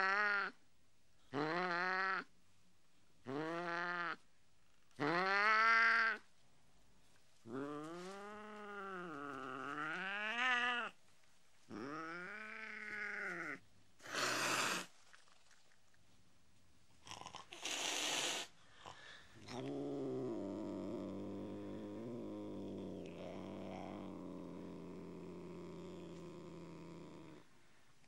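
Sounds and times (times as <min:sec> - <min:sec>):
cat hissing: 0:11.8 - 0:15.1, 0:17.1 - 0:21.3.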